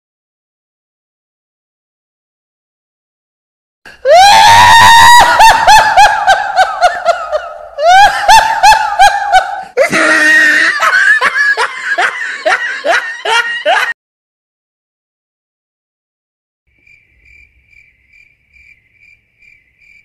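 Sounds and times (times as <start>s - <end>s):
high-pitched cackling laughter: 4.9s - 14.0s.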